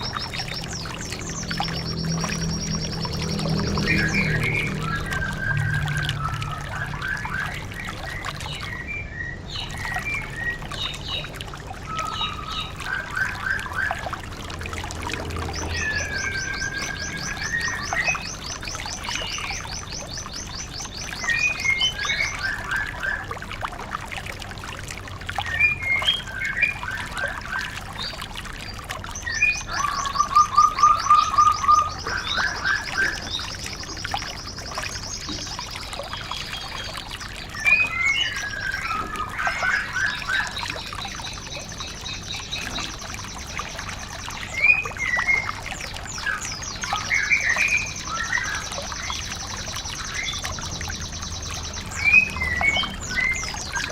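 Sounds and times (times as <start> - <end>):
lower rapid bird trill: 0.0 - 23.4, 25.4 - 53.9
songbirds chirping and trilling: 0.0 - 53.9.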